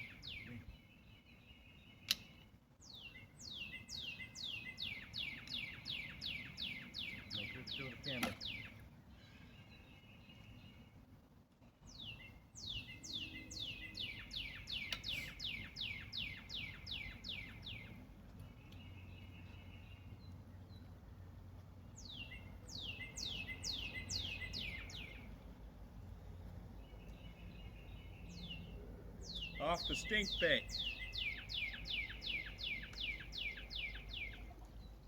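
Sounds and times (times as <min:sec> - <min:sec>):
songbird whistling: 0:00.0 - 0:08.8, 0:11.9 - 0:18.0, 0:22.0 - 0:25.3, 0:27.0 - 0:34.5.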